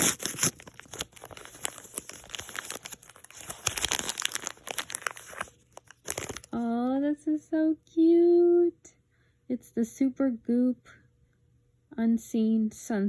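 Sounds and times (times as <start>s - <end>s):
paper wrapping crinkling and tearing: 0.0s - 6.6s.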